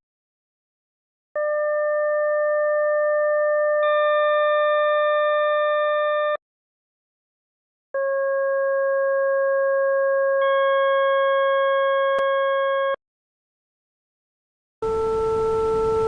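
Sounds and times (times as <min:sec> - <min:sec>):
computer-generated steady tone: 0:14.8 - 0:16.0.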